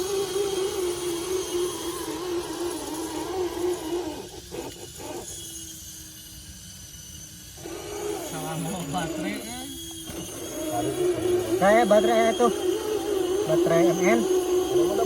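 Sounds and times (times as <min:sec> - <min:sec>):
small electric motor whining: 0:00.0 - 0:15.0.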